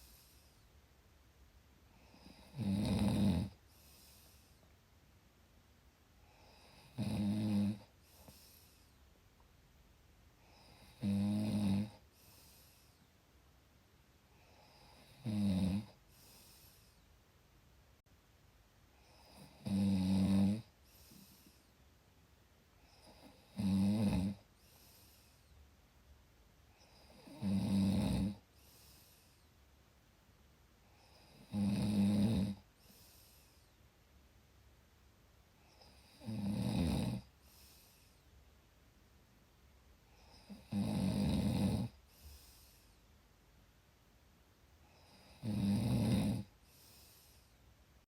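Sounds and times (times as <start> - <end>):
rattling snores: 2.0 - 3.6, 6.4 - 8.5, 10.6 - 12.0, 14.5 - 16.0, 19.2 - 21.3, 23.0 - 24.4, 26.8 - 28.4, 31.0 - 32.6, 35.7 - 37.3, 40.2 - 42.0, 45.0 - 46.6
faint breath out: 46.6 - 47.7.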